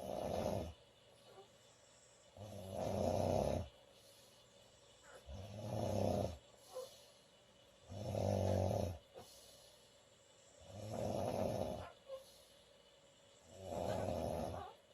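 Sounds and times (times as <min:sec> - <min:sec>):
woman snoring loudly: 0:00.0 - 0:00.8, 0:02.4 - 0:03.7, 0:05.3 - 0:06.4, 0:07.9 - 0:09.1, 0:10.6 - 0:12.0, 0:13.4 - 0:14.8.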